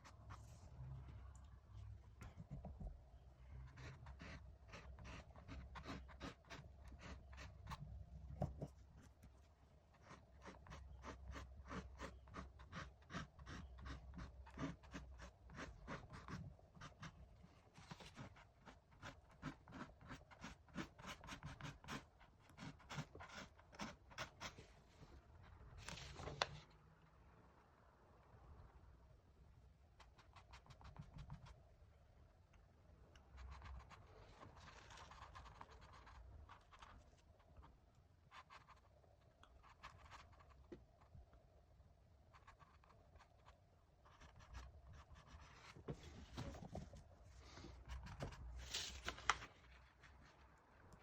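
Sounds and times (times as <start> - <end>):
paintbrush scratching on canvas: 3.7 - 7.8, 9.9 - 17.2.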